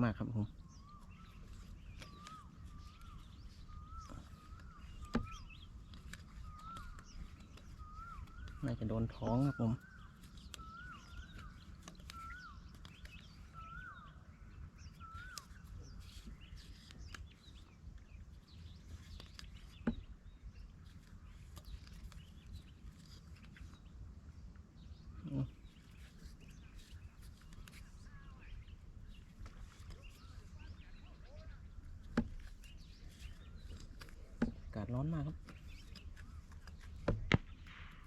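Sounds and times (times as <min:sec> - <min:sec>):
faint bird chirps: 0:00.0 - 0:38.0
bird whistled call: 0:00.7 - 0:16.8.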